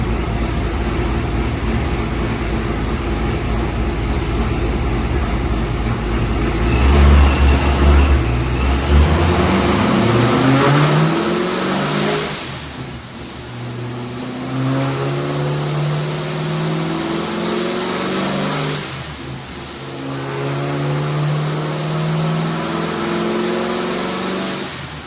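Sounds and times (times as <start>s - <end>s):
car engine revving: 0.0s - 25.0s.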